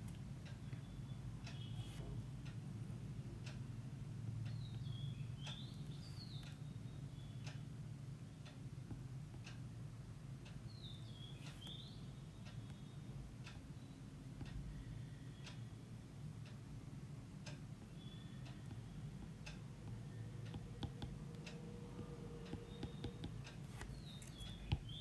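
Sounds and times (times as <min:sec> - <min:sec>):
low steady hum: 0:00.0 - 0:25.0
bird chirping: 0:00.6 - 0:02.0, 0:04.5 - 0:07.6, 0:10.7 - 0:13.1, 0:18.0 - 0:18.9, 0:22.5 - 0:23.2, 0:23.8 - 0:25.0.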